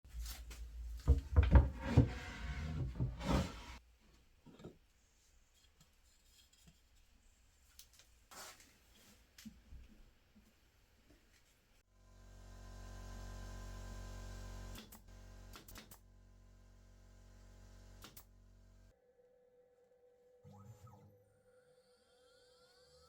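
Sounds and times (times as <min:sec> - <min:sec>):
scraping: 0:01.1 - 0:03.8.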